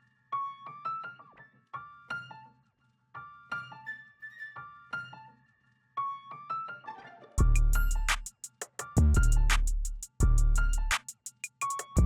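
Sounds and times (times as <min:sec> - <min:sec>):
beat with heavy bass and drums: 0:07.4 - 0:12.0.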